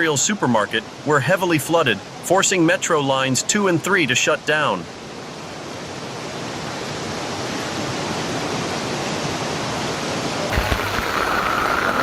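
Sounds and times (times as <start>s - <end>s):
water rushing: 5.9s - 12.0s.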